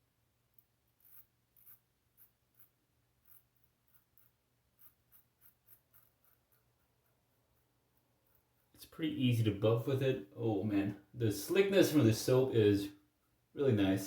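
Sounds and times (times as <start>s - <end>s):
razor scraping skin: 0.9s - 8.7s.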